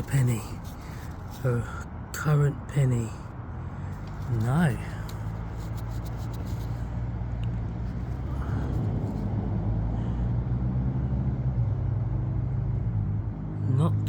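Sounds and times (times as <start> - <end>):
motor vehicle engine rumbling: 0.0 - 10.9.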